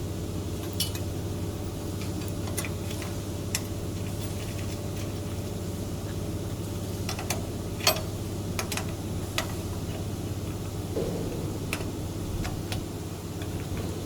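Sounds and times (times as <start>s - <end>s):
steady low hum: 7.6s - 14.0s.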